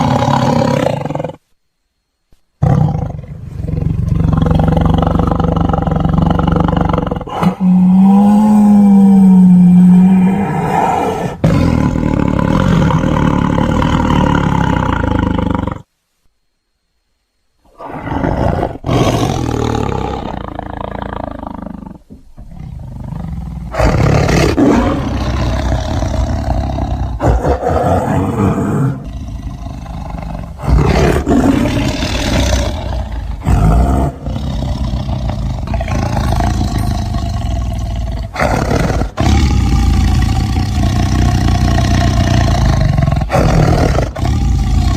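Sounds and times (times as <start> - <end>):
tiger roaring: 0.0 - 1.4, 2.6 - 15.9, 17.7 - 44.9.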